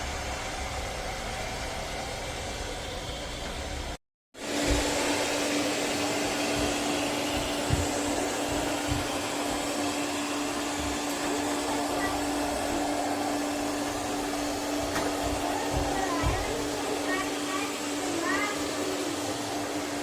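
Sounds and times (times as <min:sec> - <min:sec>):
robot vacuum running: 0:04.4 - 0:20.0.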